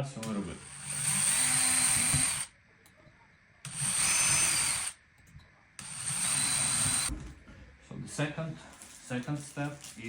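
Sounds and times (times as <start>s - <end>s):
power drill whining: 0.5s - 2.5s, 3.7s - 5.0s, 5.8s - 7.1s.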